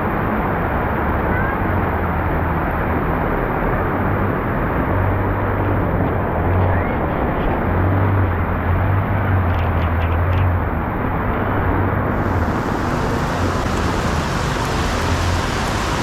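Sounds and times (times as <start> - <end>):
vehicle engines humming: 12.0 - 16.0
heavy rain hiss: 12.1 - 16.0.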